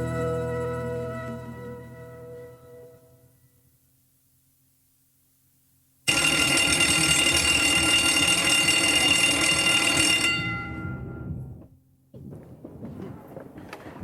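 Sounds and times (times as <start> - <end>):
electric bell ringing: 6.1 - 11.6.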